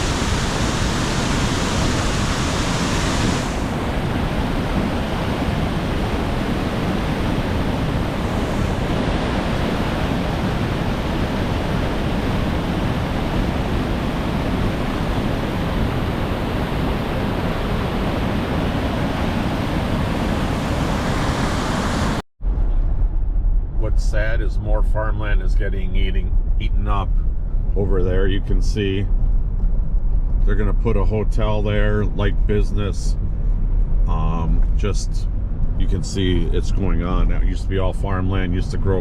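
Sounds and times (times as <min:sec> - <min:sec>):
water rushing: 0:00.0 - 0:22.2
wind on microphone: 0:00.0 - 0:39.0.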